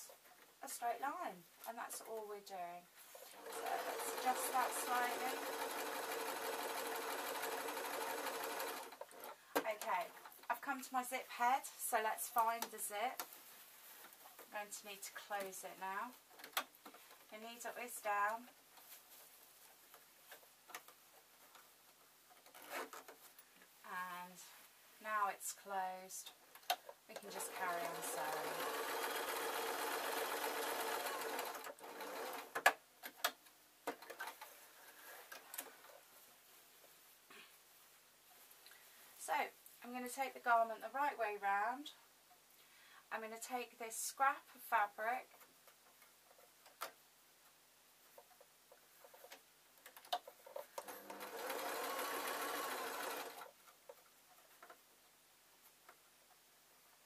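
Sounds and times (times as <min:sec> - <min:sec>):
sewing machine stitching: 0:03.2 - 0:09.4, 0:27.2 - 0:33.2, 0:50.8 - 0:53.6.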